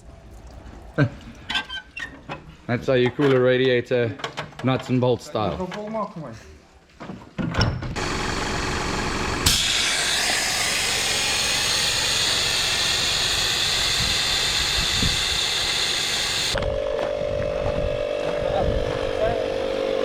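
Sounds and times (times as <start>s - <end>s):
loud steady hiss: 8.0s - 16.6s
steady pitched hum: 8.0s - 20.0s
vehicle engine running: 8.0s - 20.0s.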